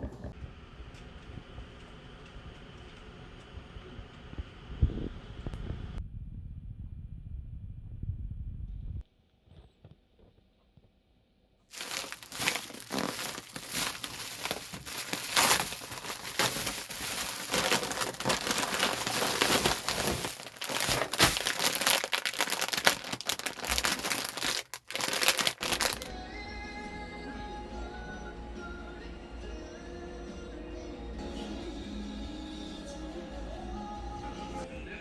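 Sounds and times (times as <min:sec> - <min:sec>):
packaging crinkling: 0:11.7 - 0:26.1.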